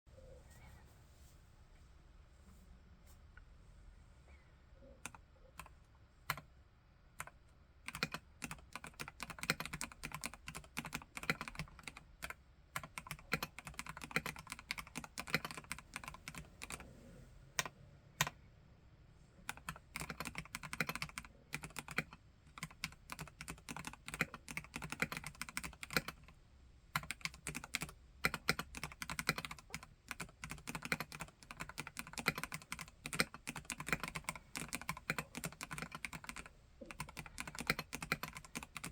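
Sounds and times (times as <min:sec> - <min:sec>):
mechanical keyboard typing: 0:07.2 - 0:16.9, 0:19.5 - 0:26.3, 0:27.0 - 0:38.9.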